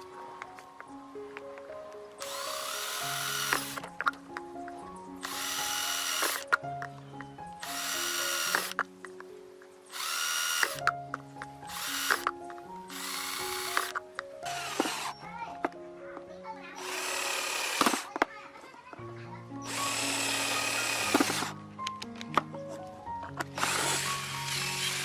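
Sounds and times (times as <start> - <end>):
background music: 0.0 - 25.0
small electric motor whining: 2.2 - 3.9, 5.2 - 6.5, 7.6 - 8.8, 9.9 - 10.8, 11.7 - 12.3, 12.9 - 13.9, 14.5 - 15.2, 16.8 - 18.1, 19.6 - 21.5, 23.6 - 25.0.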